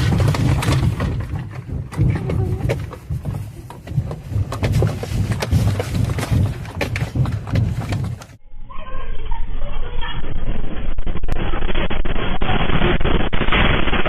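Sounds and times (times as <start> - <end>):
loose objects clattering: 0.0 - 8.4
deep continuous rumbling: 0.0 - 14.0.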